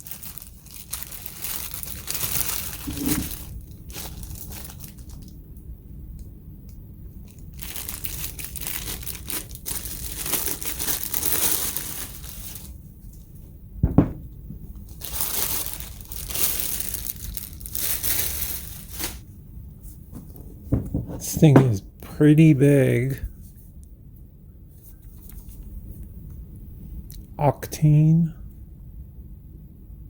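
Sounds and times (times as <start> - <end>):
packaging crinkling and tearing: 0.0 - 5.4, 7.3 - 12.8, 14.8 - 19.2
single thump: 13.8 - 14.3, 20.7 - 21.2.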